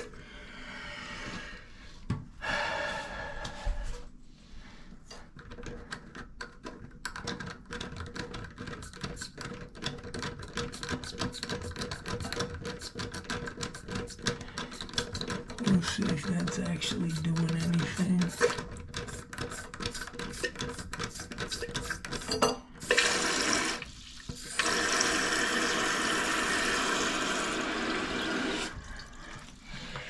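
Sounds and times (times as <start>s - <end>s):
water hissing into toilet tank: 21.5s - 30.0s.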